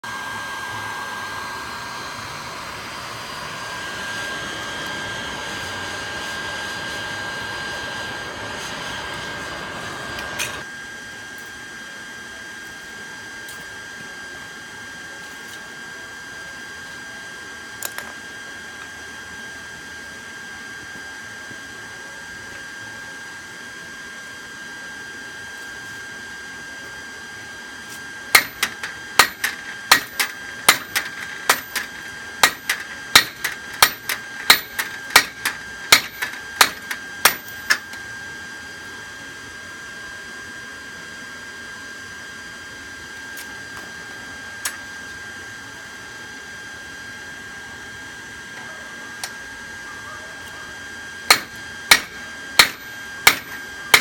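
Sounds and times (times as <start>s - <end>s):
hammer striking steel anvil: 28.4s - 38.0s, 51.3s - 54.0s.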